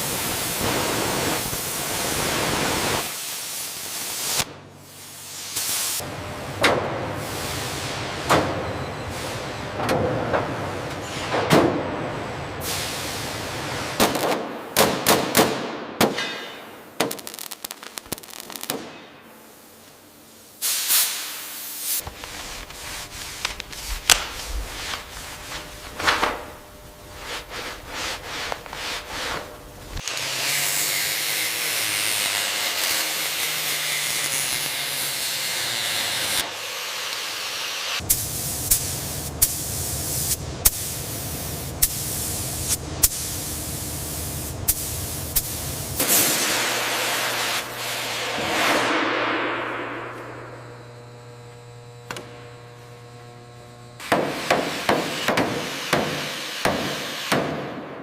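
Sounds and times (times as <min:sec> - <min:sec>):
spray hissing: 0:38.1 - 0:48.2.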